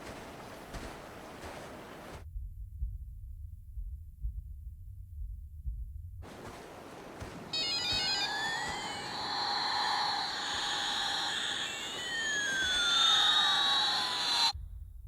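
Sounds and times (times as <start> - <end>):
gliding synthetic tones: 7.6 - 14.5
electronic beeps: 7.6 - 14.6
toy hiss: 7.6 - 14.6.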